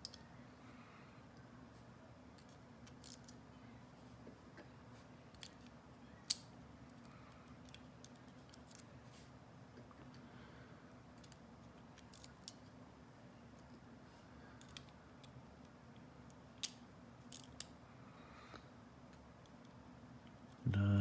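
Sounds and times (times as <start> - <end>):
metallic lock picking clicks: 0.0 - 0.3, 2.4 - 3.4, 6.3 - 6.5, 12.0 - 12.7, 16.6 - 17.7
low steady hum: 0.0 - 21.0.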